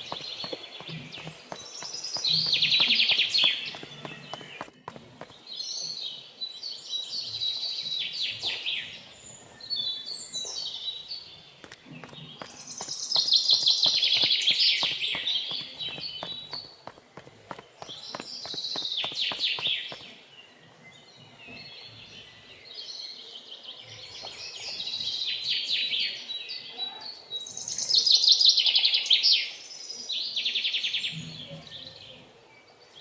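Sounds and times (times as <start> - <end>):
birds chirping and trilling: 0.0 - 6.2.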